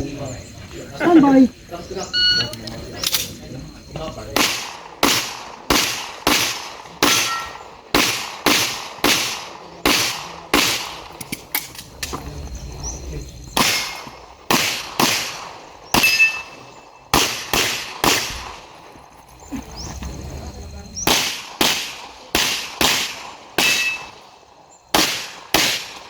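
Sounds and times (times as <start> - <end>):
pistol shots with echo: 4.3 - 11.4, 13.6 - 18.8, 21.0 - 26.0.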